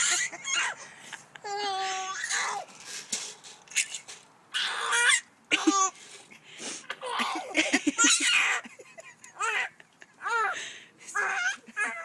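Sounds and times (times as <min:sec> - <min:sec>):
baby giggling: 0:00.0 - 0:02.6, 0:07.0 - 0:10.6, 0:11.2 - 0:12.0.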